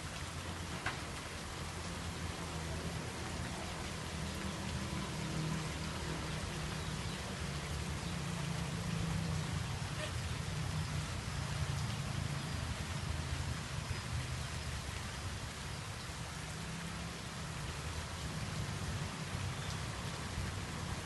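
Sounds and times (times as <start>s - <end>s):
steady rain: 0.0s - 21.0s.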